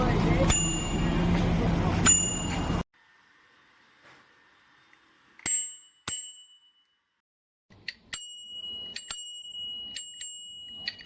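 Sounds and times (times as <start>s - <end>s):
bicycle bell dings: 0.5s - 1.4s, 2.0s - 2.8s, 5.4s - 7.2s, 8.1s - 11.0s.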